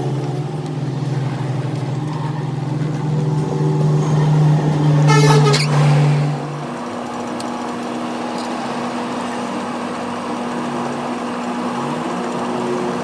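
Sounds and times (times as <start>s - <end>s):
motor humming: 0.0s - 13.0s.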